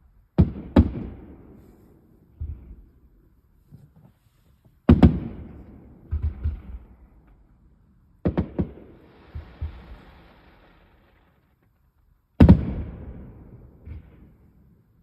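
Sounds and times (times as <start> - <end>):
fireworks bangs: 0.3 - 3.2, 4.8 - 7.4, 8.2 - 14.6
fireworks booms: 0.3 - 3.2, 4.8 - 7.5, 8.2 - 11.8, 12.4 - 14.6.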